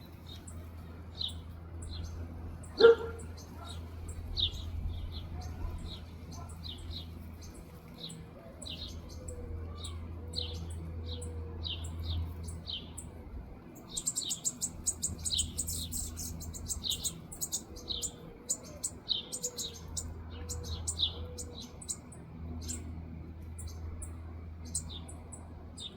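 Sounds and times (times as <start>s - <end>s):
baby birds chirping: 13.8s - 22.9s.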